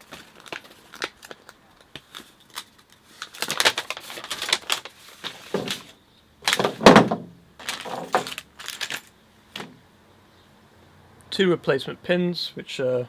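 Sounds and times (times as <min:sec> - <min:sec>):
bag rustling: 0:04.2 - 0:09.1
small parts knocking: 0:06.5 - 0:09.0.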